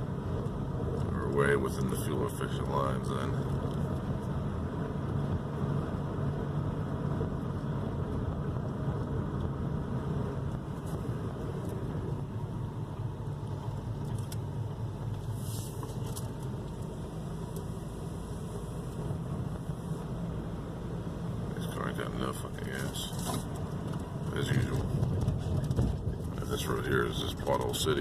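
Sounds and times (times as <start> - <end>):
car engine and tyre rumble: 0.0 - 28.0.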